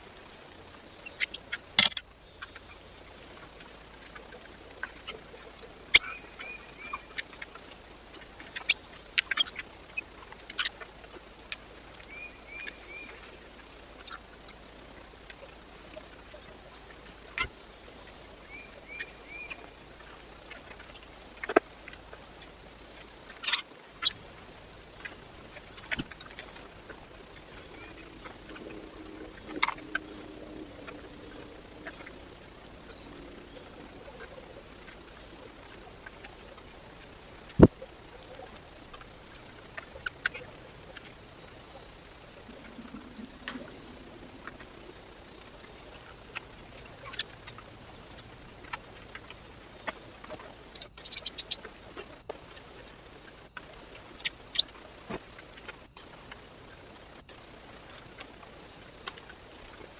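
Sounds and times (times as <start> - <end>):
faint hiss: 0.0 - 59.9
birds tapping and knocking: 42.8 - 44.7.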